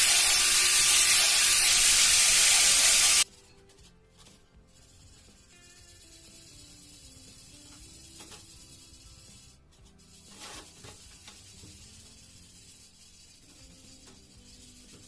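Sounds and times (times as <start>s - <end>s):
steady hiss: 0.0s - 3.2s
faint background music: 3.2s - 15.0s.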